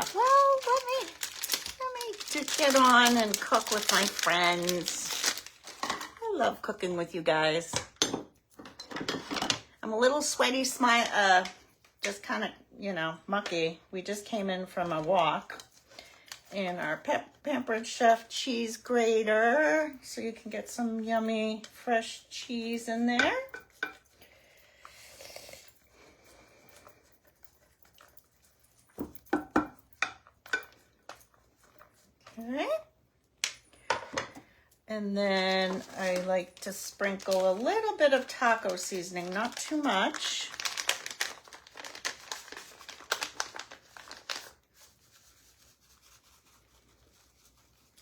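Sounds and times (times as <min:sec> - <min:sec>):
seasoning packet crinkling: 0:00.0 - 0:06.2, 0:35.4 - 0:47.5.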